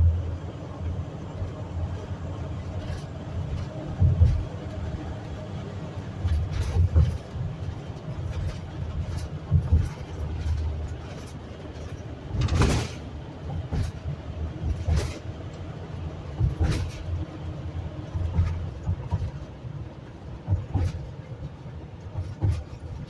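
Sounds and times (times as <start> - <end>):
road noise rumble: 0.0 - 23.0
sharp knocks and rattles: 6.2 - 15.3, 16.3 - 17.3, 18.0 - 19.5, 20.4 - 21.2, 22.0 - 23.0.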